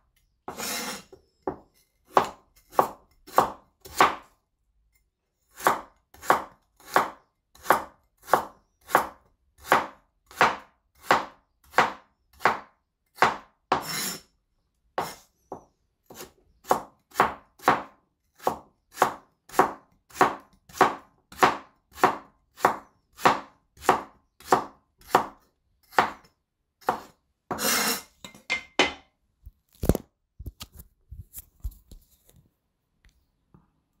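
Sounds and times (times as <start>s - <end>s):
knife cutting carrot on board: 0.5s - 4.3s, 5.5s - 12.6s, 13.2s - 14.2s, 15.0s - 15.2s, 16.1s - 28.0s.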